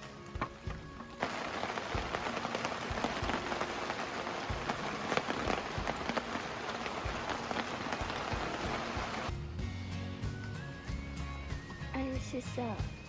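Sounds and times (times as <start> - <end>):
heavy rain falling: 0.0 - 9.3.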